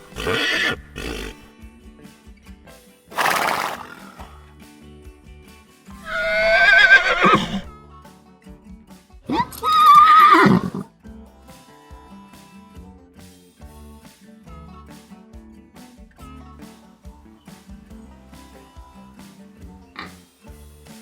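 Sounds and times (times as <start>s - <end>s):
horse whinnying: 0.0s - 1.5s, 3.1s - 4.4s, 6.1s - 7.7s, 9.3s - 10.9s.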